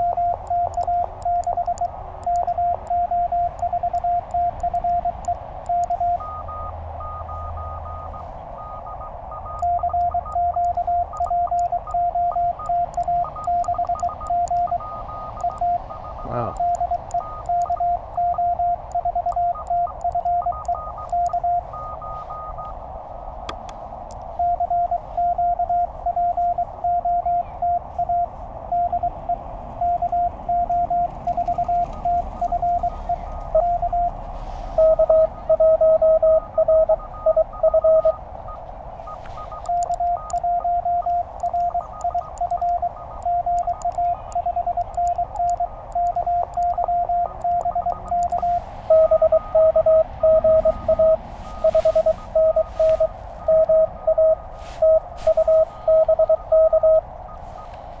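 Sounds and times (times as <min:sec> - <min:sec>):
morse code tones: 0:00.0 - 0:58.0
radio receiver hiss: 0:36.4 - 0:58.0.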